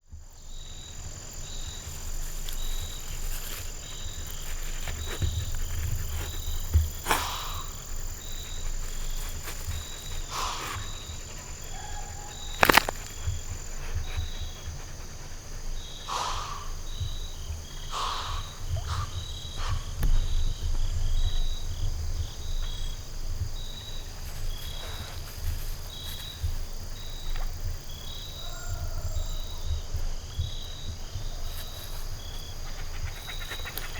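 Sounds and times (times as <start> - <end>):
crickets chirping: 0.0 - 33.9
low wind rumble: 3.8 - 24.5
deer snorting: 4.0 - 16.9.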